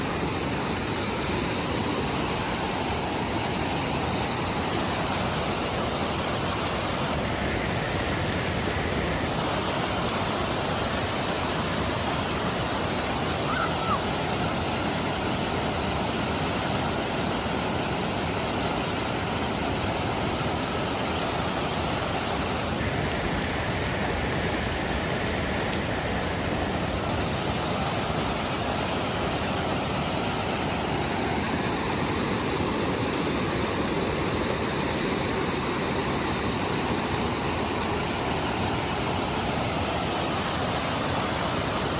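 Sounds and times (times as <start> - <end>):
waterfall rushing: 0.0 - 41.9.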